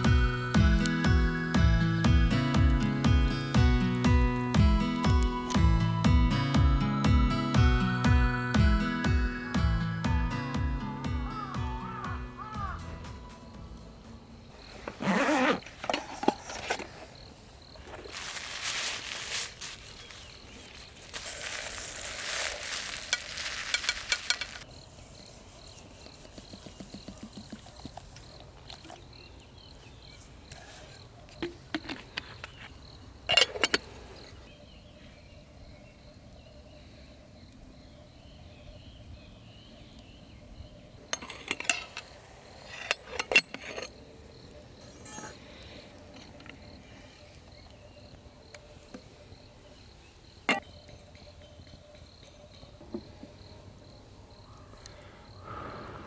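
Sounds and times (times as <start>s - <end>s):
stove hissing: 0.0s - 5.6s
metal cookware clinking: 41.1s - 42.1s, 44.8s - 45.4s.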